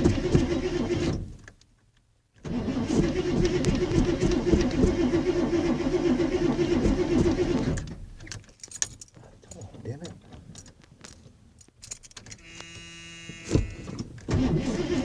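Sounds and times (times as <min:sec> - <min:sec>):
starter cranking engine: 0:02.5 - 0:08.2, 0:13.4 - 0:15.0.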